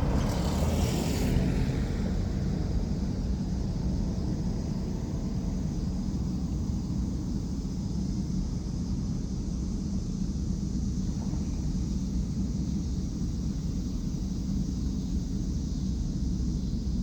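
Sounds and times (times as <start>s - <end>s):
freight train rumble: 0.0s - 9.0s.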